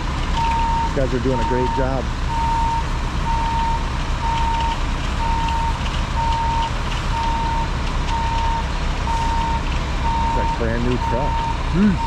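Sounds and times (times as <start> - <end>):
truck engine running: 0.0 - 12.0
reversing alarm beeping: 0.4 - 12.0.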